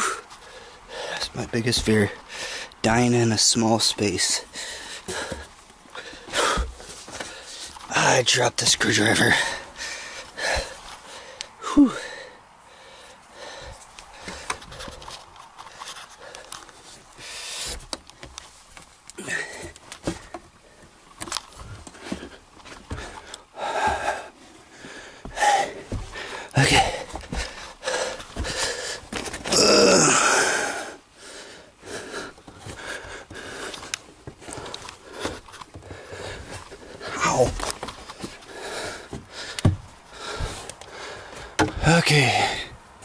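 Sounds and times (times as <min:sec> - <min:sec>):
man breathing hard: 0:00.0 - 0:01.4, 0:02.0 - 0:02.8, 0:04.4 - 0:07.8, 0:09.2 - 0:18.3, 0:19.2 - 0:20.9, 0:21.6 - 0:43.0
man panting: 0:00.0 - 0:02.8, 0:04.3 - 0:07.8, 0:09.0 - 0:17.8, 0:19.2 - 0:20.4, 0:21.6 - 0:42.8
scuffing and rustling: 0:04.6 - 0:07.9, 0:19.6 - 0:29.5, 0:32.4 - 0:41.6.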